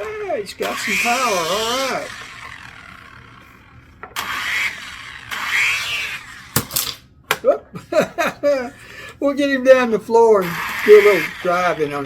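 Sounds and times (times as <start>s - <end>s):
toy helicopter motors whirring: 0.0s - 7.0s, 10.4s - 12.0s.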